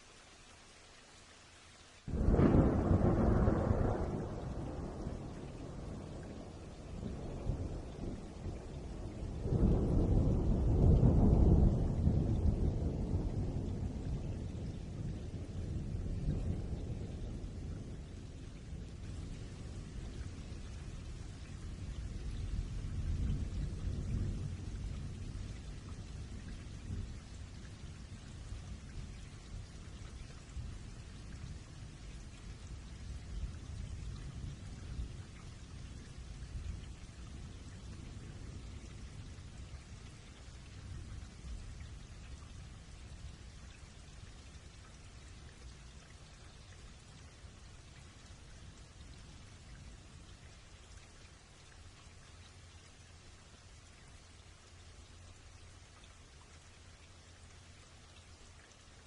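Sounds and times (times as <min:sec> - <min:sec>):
steady rain falling: 0:00.0 - 0:59.0
thunder rolling: 0:02.1 - 0:07.8.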